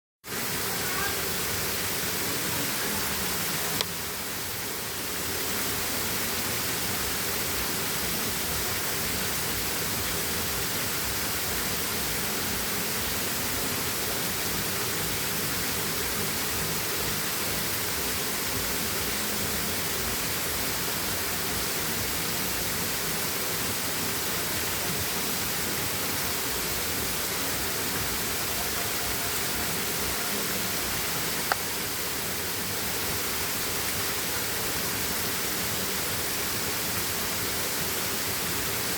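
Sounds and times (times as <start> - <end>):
waterfall roaring: 0.3 - 38.9.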